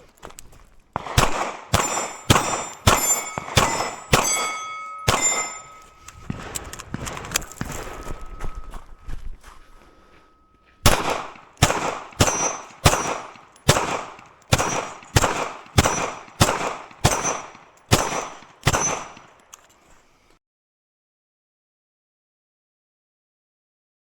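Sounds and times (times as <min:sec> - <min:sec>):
pistol gunshots: 0:01.0 - 0:08.6, 0:10.8 - 0:19.4
metallic ring of steel targets: 0:01.3 - 0:09.2, 0:10.1 - 0:19.8.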